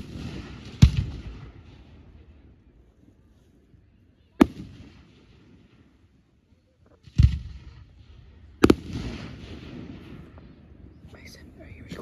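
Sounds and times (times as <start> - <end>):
fireworks bangs: 0.0 - 2.4, 4.4 - 6.0, 7.0 - 10.7.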